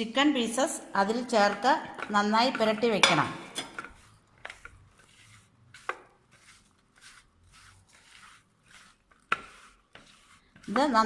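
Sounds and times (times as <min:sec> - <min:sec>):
soft strokes mixing chicken in bowl: 0:03.6 - 0:11.0.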